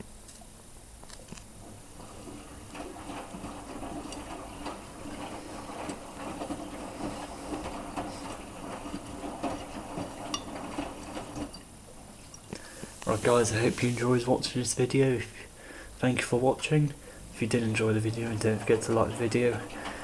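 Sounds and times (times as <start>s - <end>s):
wet laundry and water sloshing: 1.2s - 20.0s.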